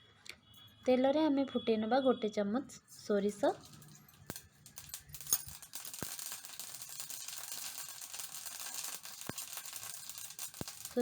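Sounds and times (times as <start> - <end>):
mustard seeds spluttering in oil: 4.8 - 11.0.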